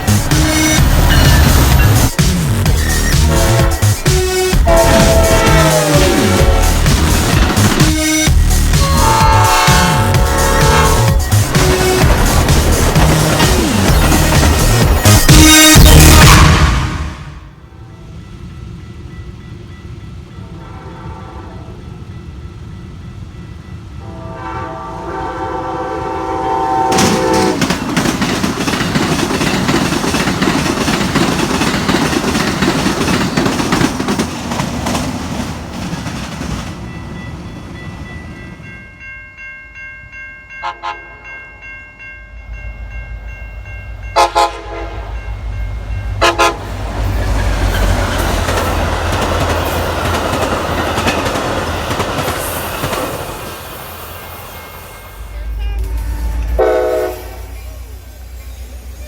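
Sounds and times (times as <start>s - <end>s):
locomotive engine rumbling: 0.0s - 17.5s, 42.3s - 59.0s
train passing with wheel clatter: 0.0s - 59.0s
locomotive air horn: 3.1s - 7.3s, 8.0s - 12.4s, 20.5s - 21.8s, 24.0s - 27.7s, 40.6s - 41.2s, 44.2s - 45.2s, 46.2s - 46.8s, 55.5s - 57.6s.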